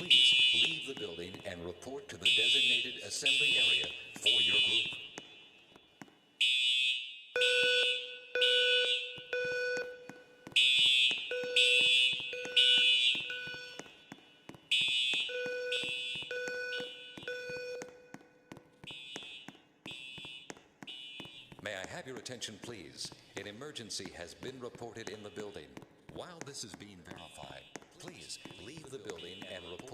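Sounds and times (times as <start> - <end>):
recorded evacuation announcement: 0.0 - 5.2, 21.6 - 29.9
fire alarm pulses: 0.0 - 29.9.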